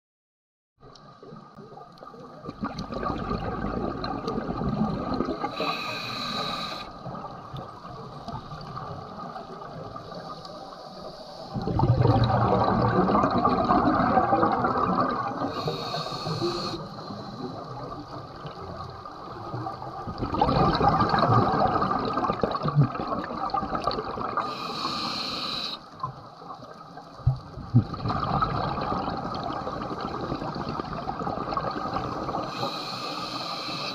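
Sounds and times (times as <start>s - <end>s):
exhaled bubbles gushing: 2.2s - 10.2s, 11.5s - 24.6s, 26.0s - 33.0s
regulator inhalation hiss: 5.4s - 7.0s, 10.1s - 11.6s, 15.4s - 17.7s, 24.4s - 25.9s, 32.5s - 33.9s.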